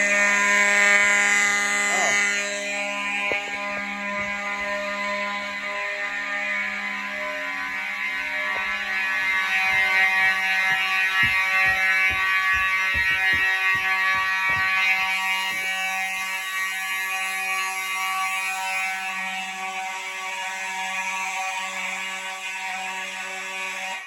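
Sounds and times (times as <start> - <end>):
low knocks: 8.6 - 15.6.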